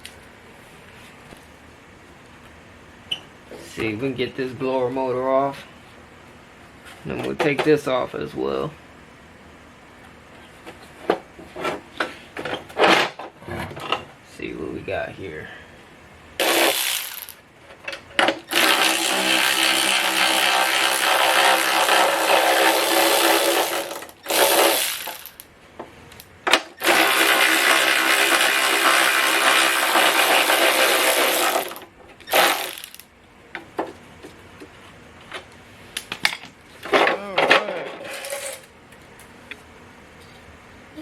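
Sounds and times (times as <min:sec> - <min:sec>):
power tool motor running: 0:16.4 - 0:17.4, 0:18.5 - 0:25.4, 0:26.8 - 0:33.0.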